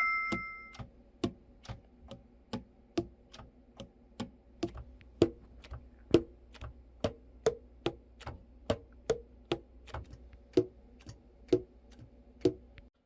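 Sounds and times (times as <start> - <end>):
ringing chime: 0.0 - 0.8.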